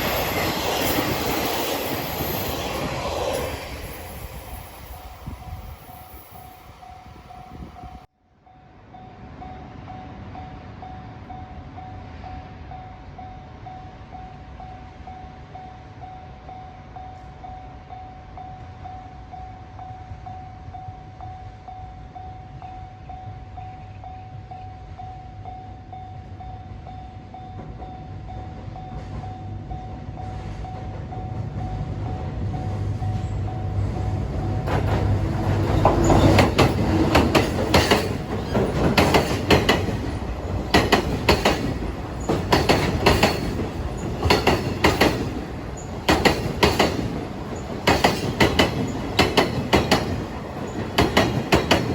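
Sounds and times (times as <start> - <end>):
freight train rumble: 0.0 - 51.9
train passing: 0.0 - 51.9
level crossing warning bell: 3.4 - 51.9.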